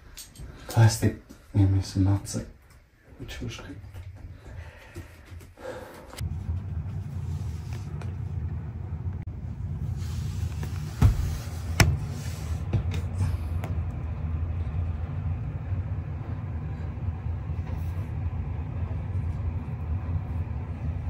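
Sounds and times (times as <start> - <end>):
steady low rumble: 6.1 - 21.0.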